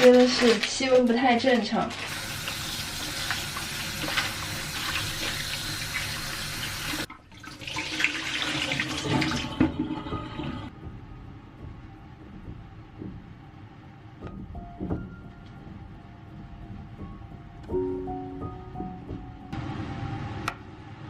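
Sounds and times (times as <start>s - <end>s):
tap water running into sink: 2.0s - 10.7s.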